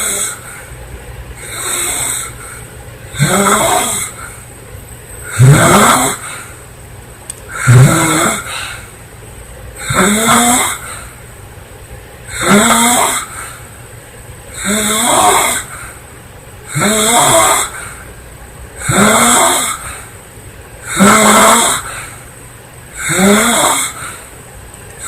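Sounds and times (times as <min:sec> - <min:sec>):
girl snoring loudly: 0:00.0 - 0:00.4, 0:01.4 - 0:02.3, 0:03.2 - 0:04.1, 0:05.3 - 0:06.2, 0:07.6 - 0:08.6, 0:09.8 - 0:10.8, 0:12.4 - 0:13.3, 0:14.6 - 0:15.7, 0:16.7 - 0:17.8, 0:18.8 - 0:19.8, 0:20.9 - 0:21.9, 0:23.0 - 0:24.0.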